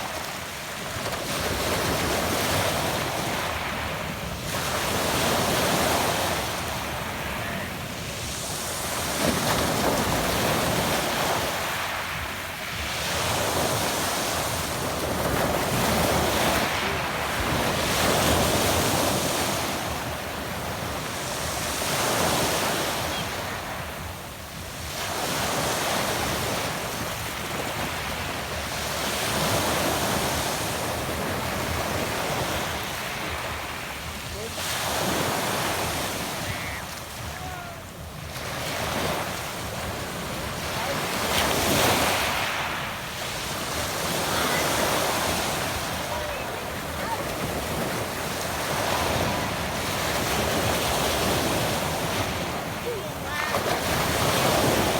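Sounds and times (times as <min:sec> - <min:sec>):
waves on a pebble beach: 0:00.0 - 0:54.9.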